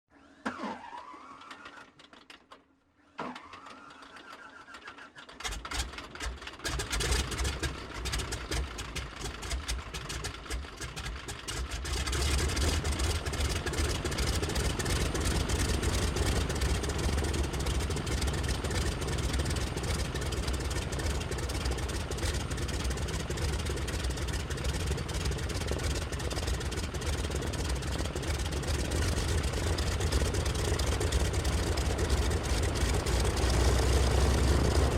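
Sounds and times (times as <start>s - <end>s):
helicopter rotor beat: 11.8s - 34.9s
helicopter rising whines: 12.4s - 34.9s.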